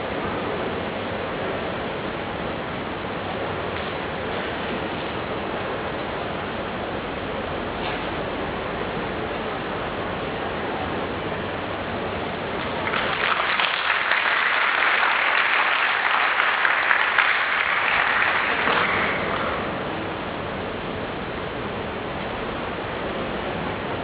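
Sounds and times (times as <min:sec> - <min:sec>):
steady background hiss: 0:00.0 - 0:24.0
audience applauding: 0:12.8 - 0:19.7.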